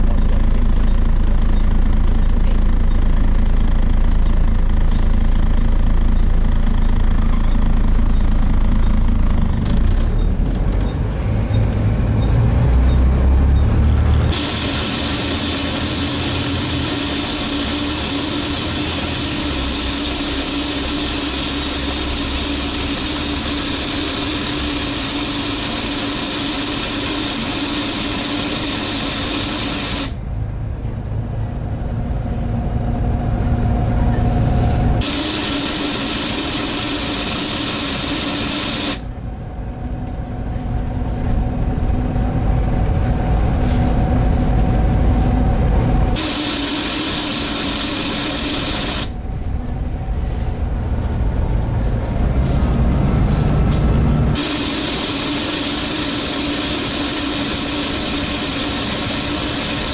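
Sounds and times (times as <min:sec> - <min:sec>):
bus diesel engine: 0:00.0 - 0:59.9
loud suction hiss: 0:14.3 - 0:30.2, 0:35.0 - 0:39.0, 0:46.2 - 0:49.2, 0:54.4 - 0:59.9.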